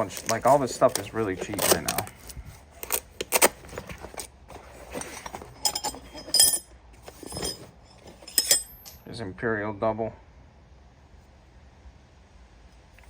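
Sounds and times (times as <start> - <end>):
steel wrenches clinking: 4.1 - 9.0.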